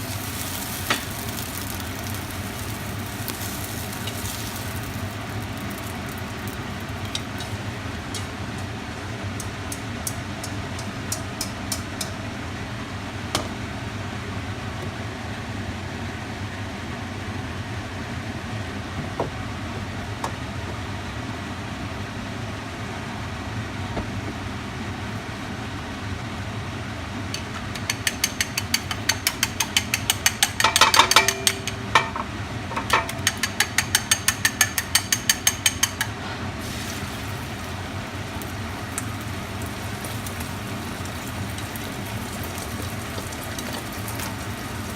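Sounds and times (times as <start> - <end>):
metal spatula scraping a wok: 0.0 - 5.9, 7.0 - 8.3
noodles frying in a wok: 0.0 - 18.8, 19.5 - 44.9.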